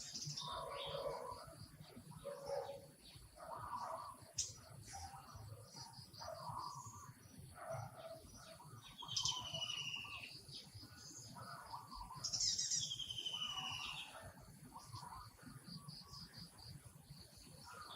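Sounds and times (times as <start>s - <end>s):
birds chirping: 0.0s - 17.9s
bird trilled calls: 8.4s - 10.5s, 11.6s - 15.3s.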